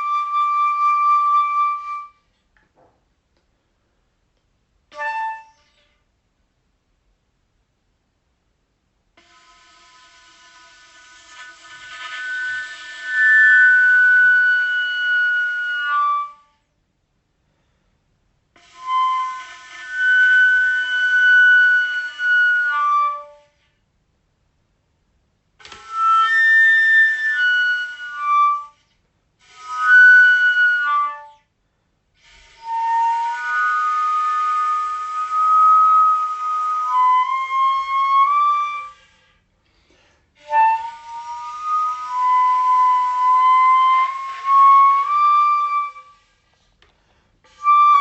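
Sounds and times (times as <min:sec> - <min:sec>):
flute-like melody: 0:00.0 - 0:02.3, 0:04.9 - 0:06.0, 0:09.2 - 0:16.7, 0:18.6 - 0:23.7, 0:25.6 - 0:31.5, 0:32.2 - 0:39.4, 0:40.4 - 0:46.4, 0:47.4 - 0:48.0.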